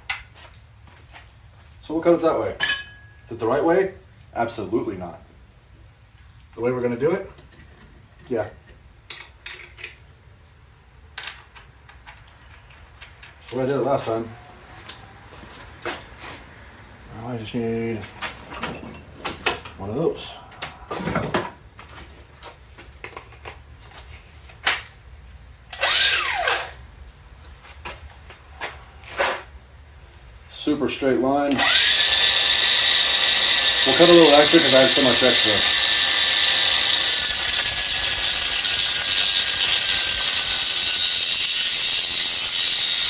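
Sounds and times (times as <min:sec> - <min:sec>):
angle grinder whine: 0:25.8 - 0:26.8, 0:31.5 - 0:43.0.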